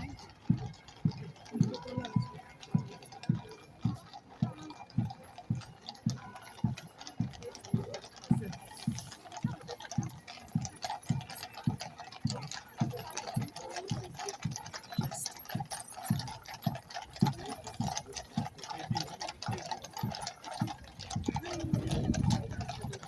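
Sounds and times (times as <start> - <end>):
crowd murmur: 0.0 - 23.0.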